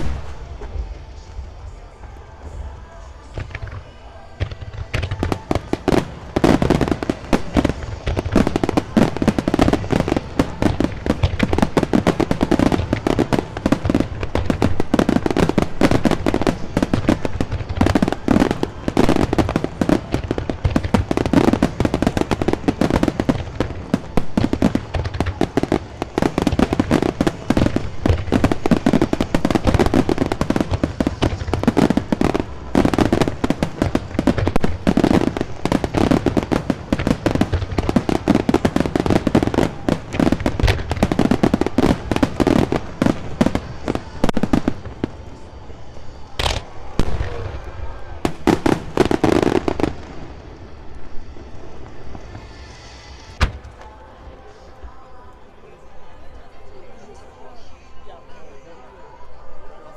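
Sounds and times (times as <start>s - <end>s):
fireworks bangs and crackles: 0.0s - 55.1s.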